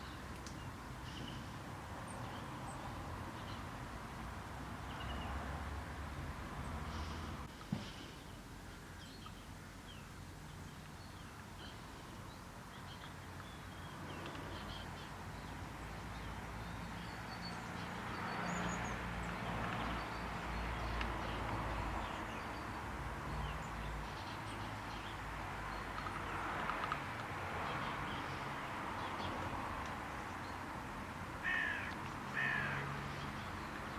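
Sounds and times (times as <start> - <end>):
outdoor background noise: 0.0 - 33.9
birds chirping: 31.4 - 33.9.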